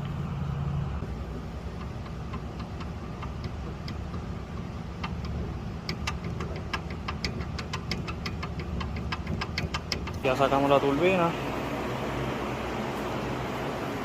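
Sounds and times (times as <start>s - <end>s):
metallic clicking of turbocharger: 1.0s - 10.8s.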